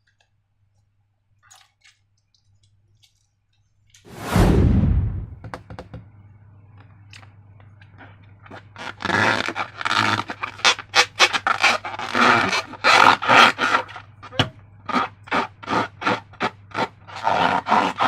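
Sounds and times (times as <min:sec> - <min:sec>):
slime squelching in a balloon: 0:14.9 - 0:18.0.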